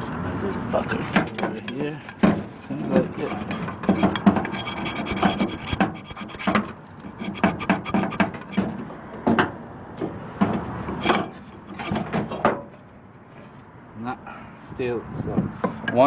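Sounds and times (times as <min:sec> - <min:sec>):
metal scraping: 0:00.3 - 0:08.9, 0:10.8 - 0:13.6
scrap metal clinks and knocks: 0:00.4 - 0:08.8, 0:10.9 - 0:12.8.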